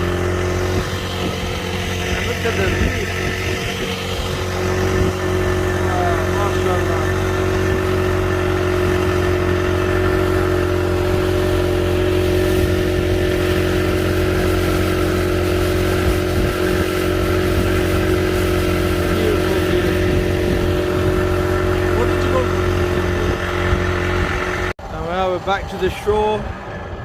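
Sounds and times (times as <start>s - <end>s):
speedboat engine running: 0.0s - 27.0s.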